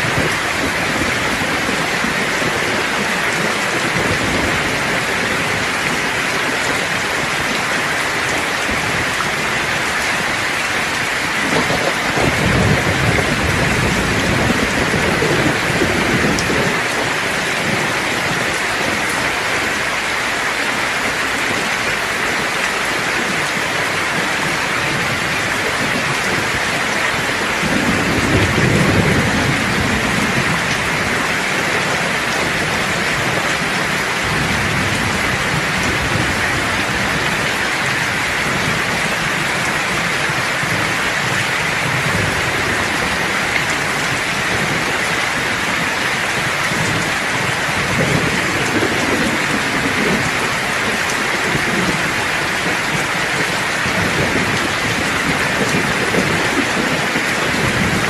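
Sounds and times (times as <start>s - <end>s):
heavy rain hissing: 0.0s - 58.0s
thunder rumbling: 0.0s - 58.0s.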